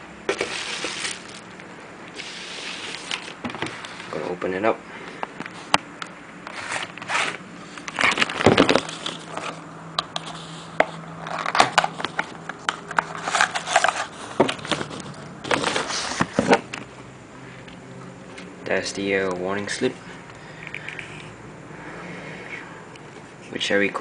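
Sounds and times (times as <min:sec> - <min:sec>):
package wrapping rustling: 0:00.4 - 0:01.5, 0:02.2 - 0:04.1, 0:06.5 - 0:16.6.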